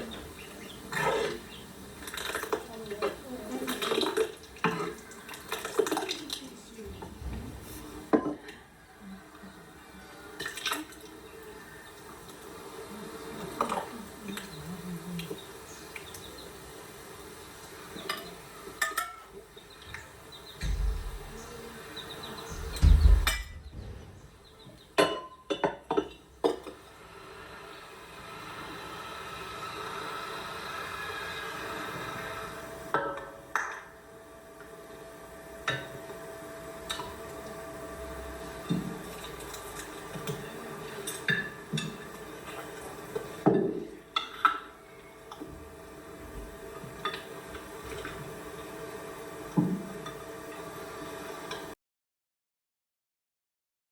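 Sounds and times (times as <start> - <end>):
low thump: 20.6 - 21.6, 22.5 - 24.5.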